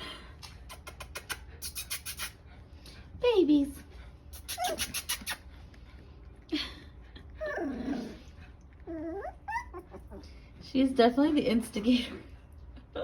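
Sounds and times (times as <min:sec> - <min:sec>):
puppies squealing and yelping: 0:04.3 - 0:05.6, 0:07.4 - 0:10.4.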